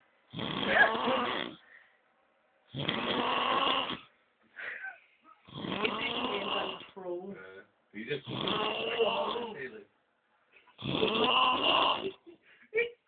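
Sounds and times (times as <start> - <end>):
person snoring: 0.3 - 1.6, 2.7 - 4.1, 5.5 - 6.9, 8.2 - 9.7, 10.8 - 12.2.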